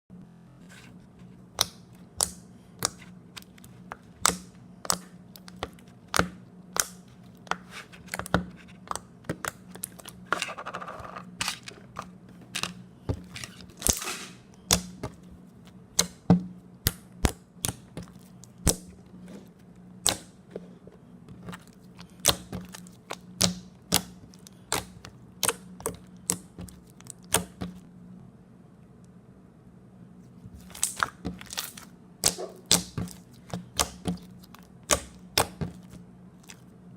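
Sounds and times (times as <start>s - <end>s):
slime squelches: 14.5s - 27.8s, 30.4s - 36.8s.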